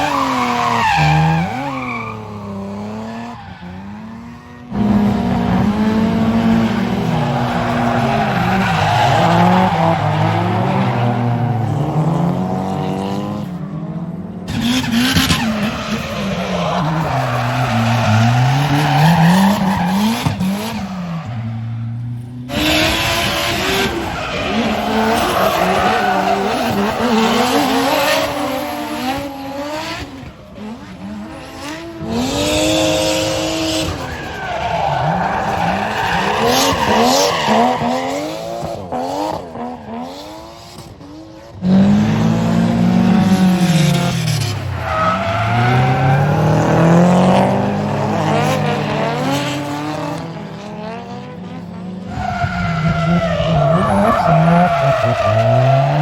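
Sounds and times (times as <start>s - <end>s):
car engines revving: 0.0s - 56.0s
tyres squealing: 52.1s - 56.0s.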